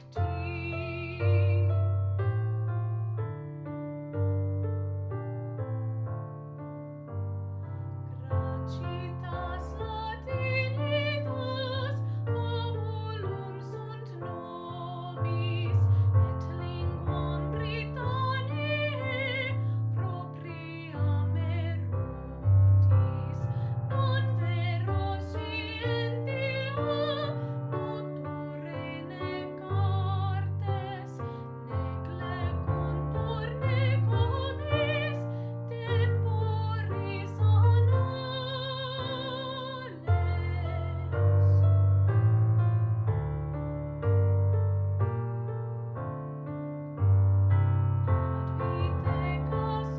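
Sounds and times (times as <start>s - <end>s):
piano: 0.0s - 49.9s
woman singing operatically: 8.4s - 15.8s, 16.5s - 21.8s, 23.9s - 41.1s, 48.7s - 49.9s.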